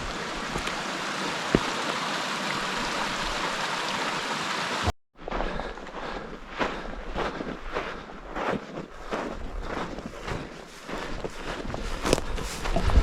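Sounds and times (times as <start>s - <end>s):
running water hiss: 0.0s - 4.9s
footsteps scuffing on rock: 1.4s - 1.8s, 5.3s - 13.0s.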